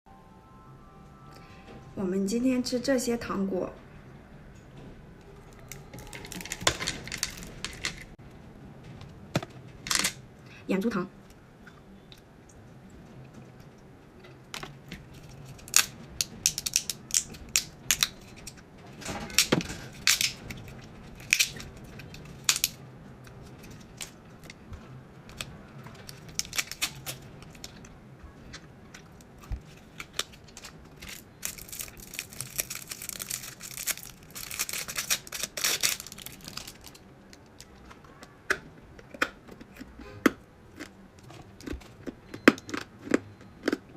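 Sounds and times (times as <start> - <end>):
candy crunching: 5.5 - 8.2, 15.2 - 18.4, 25.4 - 38.4
wrapper crinkling: 5.5 - 8.2, 25.3 - 27.8, 29.6 - 37.8.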